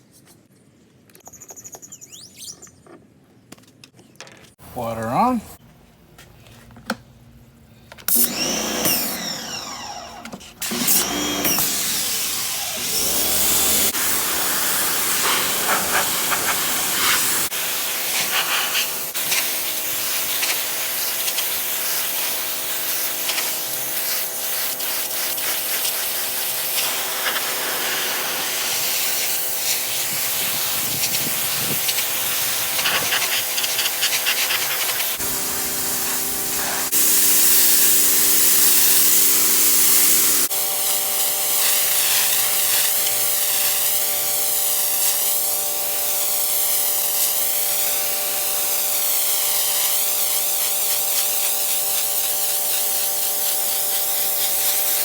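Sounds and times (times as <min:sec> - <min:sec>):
pressure washer motor humming: 0:08.1 - 0:19.4, 0:26.4 - 0:45.1
water jet hissing against surface: 0:13.0 - 0:40.5.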